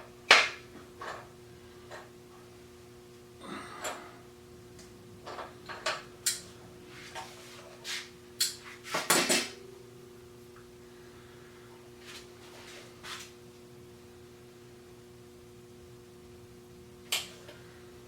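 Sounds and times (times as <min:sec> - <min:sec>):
low hum: 0:09.5 - 0:11.9.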